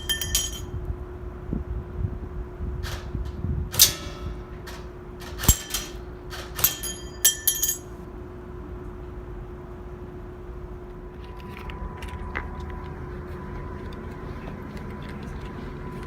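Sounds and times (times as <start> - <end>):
pellets clinking on target: 0.0 - 0.7, 6.6 - 8.0
steady low hum: 0.0 - 16.0
airsoft gun shots: 5.4 - 6.0.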